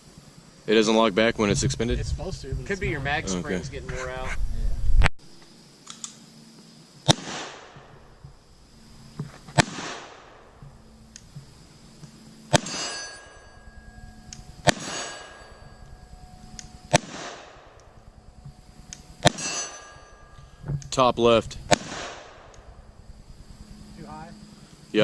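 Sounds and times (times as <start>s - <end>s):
pistol shots with echo: 7.1s - 7.8s, 9.6s - 10.5s, 12.5s - 13.3s, 14.6s - 15.6s, 16.6s - 17.8s, 19.2s - 20.0s, 21.7s - 22.6s
steel target ringing: 12.5s - 20.7s.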